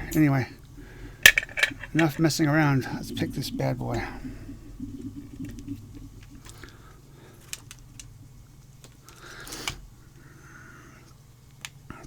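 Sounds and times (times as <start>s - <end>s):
lock picks clicking and scraping: 1.3s - 2.2s.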